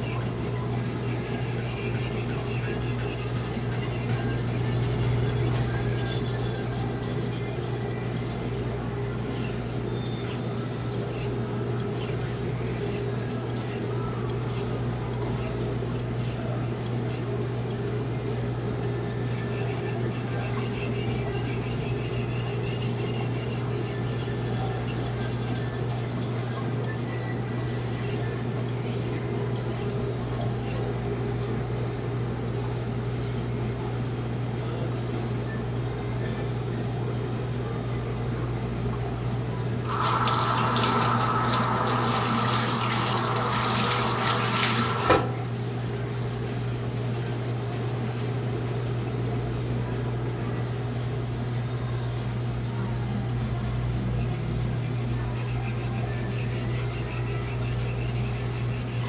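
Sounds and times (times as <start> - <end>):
steady low hum: 0.0 - 34.8
water running from tap: 39.9 - 45.4.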